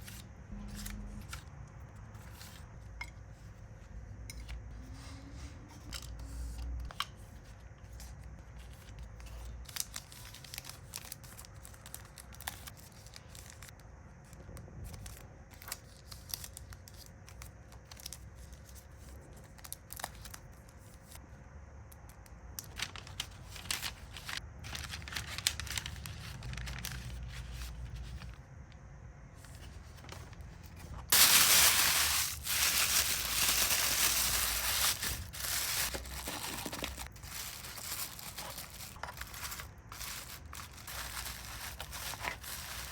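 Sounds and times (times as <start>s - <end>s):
plastic packaging crinkling: 22.6s - 28.3s, 29.9s - 42.9s.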